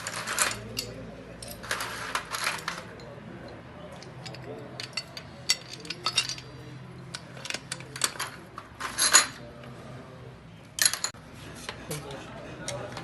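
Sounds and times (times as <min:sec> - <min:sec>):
small metal objects clinking: 0:00.0 - 0:03.1, 0:04.0 - 0:09.4.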